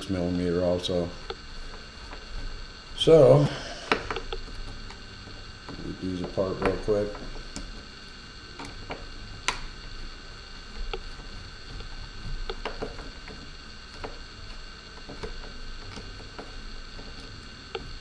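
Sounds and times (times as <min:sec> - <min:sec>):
faint hum: 0:00.0 - 0:18.0.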